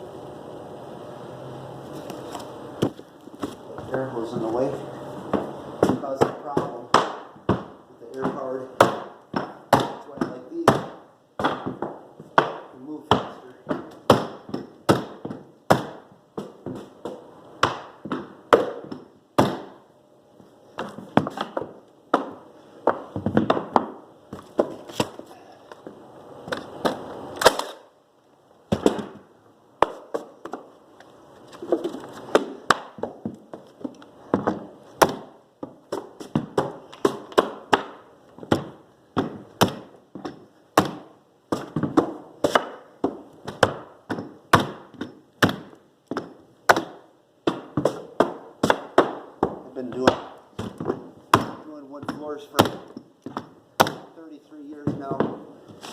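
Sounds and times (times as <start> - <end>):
mallet knocking flooring nailer: 5.3 - 19.8, 34.4 - 54.2.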